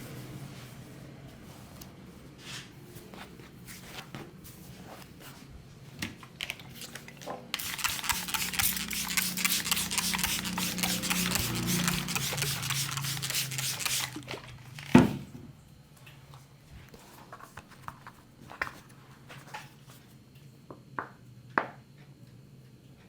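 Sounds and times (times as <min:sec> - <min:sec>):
hands scrubbing hair and scalp: 0:07.6 - 0:14.8.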